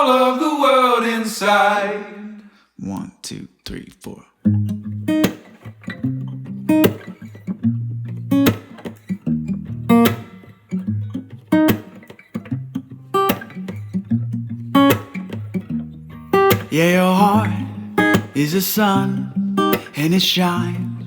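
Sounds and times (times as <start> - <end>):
acoustic guitar strumming: 4.5 - 21.0.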